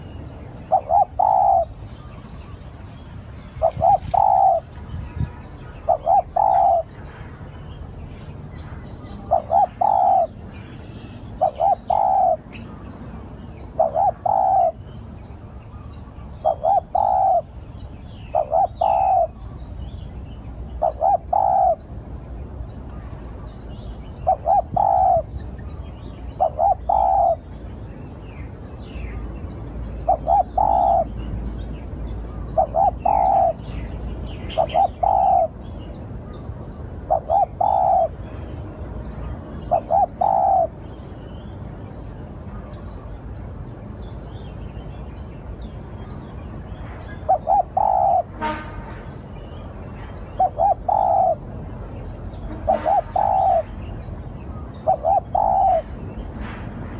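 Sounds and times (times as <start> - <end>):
dove cooing: 0.7 - 2.2, 3.6 - 7.0, 9.1 - 10.3, 11.4 - 12.5, 13.7 - 14.8, 16.4 - 17.5, 18.3 - 19.4, 20.8 - 21.9, 24.2 - 25.4, 26.4 - 27.4, 30.0 - 31.1, 32.6 - 33.6, 34.5 - 35.6, 37.1 - 38.1, 39.7 - 40.8, 47.2 - 48.5, 50.4 - 51.4, 52.7 - 53.7, 54.8 - 56.0.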